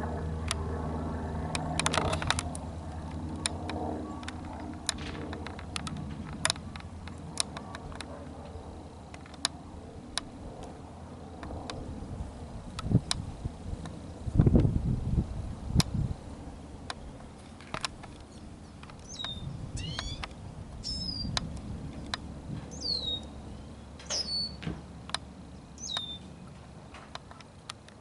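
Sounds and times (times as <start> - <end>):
sharp clicks: 17.6 - 20.4, 25.1 - 26.2
small birds chirping: 18.2 - 21.4, 22.0 - 24.7, 25.5 - 26.6
downward sweeping bird calls: 19.0 - 21.4, 22.7 - 24.7, 25.5 - 26.5.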